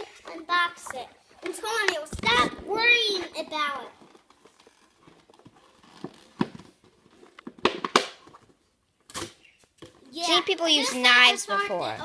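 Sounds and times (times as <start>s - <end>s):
plastic packaging clicks and crinkles: 3.9s - 10.0s.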